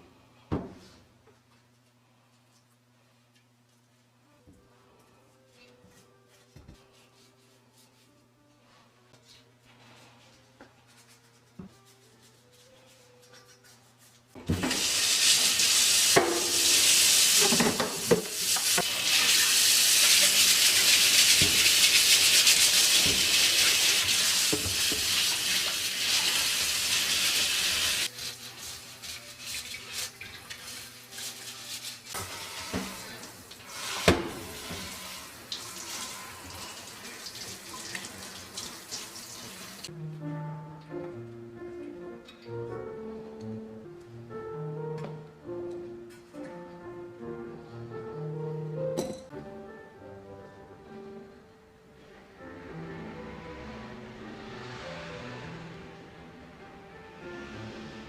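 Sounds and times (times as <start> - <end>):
water running hard: 14.6 - 28.7.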